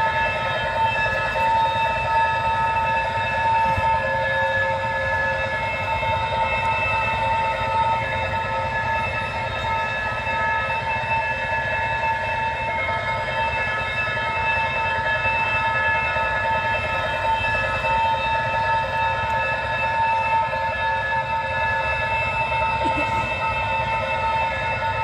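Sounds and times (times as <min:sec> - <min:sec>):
train rumbling: 0:00.0 - 0:10.8, 0:22.6 - 0:25.0
railroad crossing bell ringing: 0:00.0 - 0:25.0.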